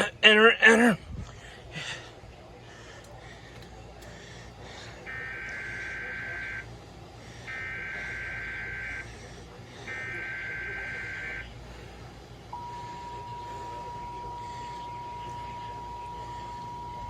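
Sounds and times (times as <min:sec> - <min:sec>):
steady warning alarm tone: 0:04.1 - 0:17.0.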